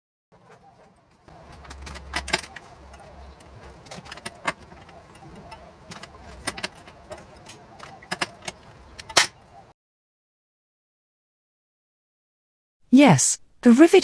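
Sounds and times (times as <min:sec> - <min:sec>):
riveting tool metallic clicks: 0:00.4 - 0:09.7.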